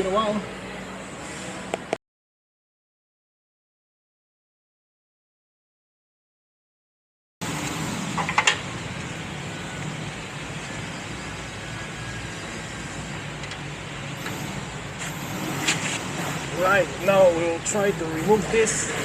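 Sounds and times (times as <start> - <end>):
low mechanical hum: 7.4 - 19.0.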